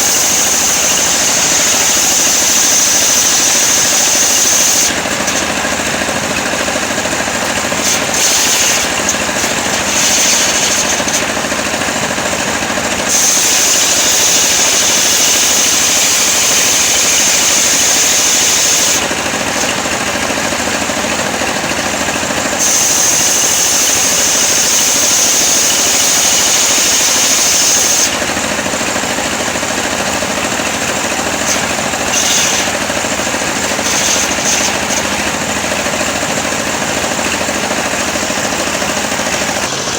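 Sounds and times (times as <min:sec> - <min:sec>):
sawmill ripping wood: 0:00.0 - 0:39.9.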